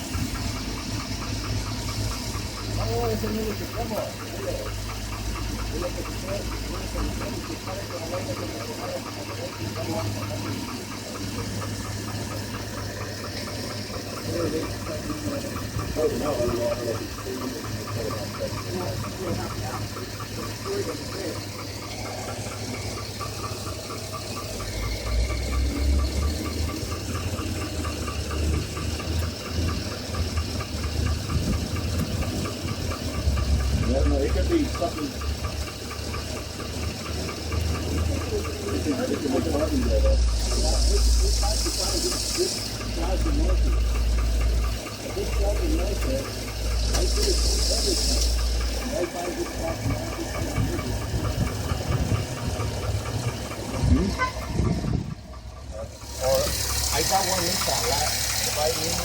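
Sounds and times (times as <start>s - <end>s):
engine idling: 0.0s - 59.0s
rapid ticking engine knock: 0.0s - 59.0s
hiss: 34.4s - 53.8s, 55.9s - 59.0s.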